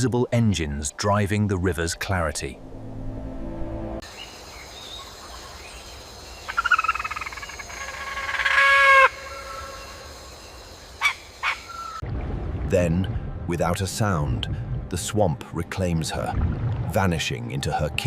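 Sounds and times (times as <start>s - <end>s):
wetland background: 0.0s - 18.0s
trilling animal calls: 6.5s - 10.3s.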